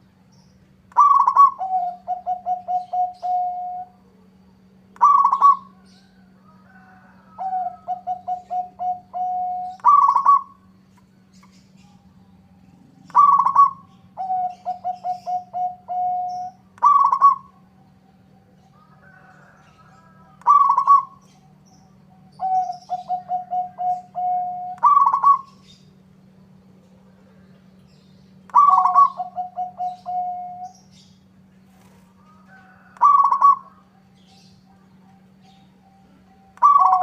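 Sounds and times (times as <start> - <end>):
steady low hum: 0.0 - 37.0
dove cooing: 0.9 - 25.9, 28.4 - 37.0.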